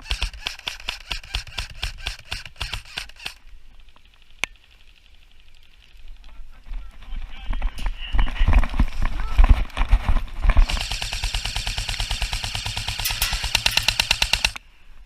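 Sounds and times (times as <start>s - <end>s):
airsoft gun shots: 10.6s - 14.6s.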